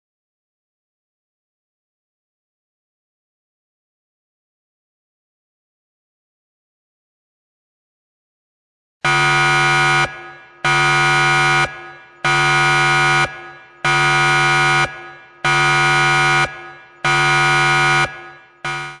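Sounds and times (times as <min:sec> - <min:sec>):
alarm clock electronic buzz: 0:09.1 - 0:19.0.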